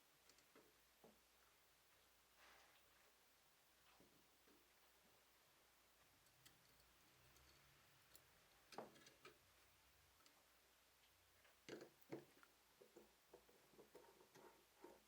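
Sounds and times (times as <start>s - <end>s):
faint clicks of small tools: 0.2s - 1.2s, 6.0s - 9.4s.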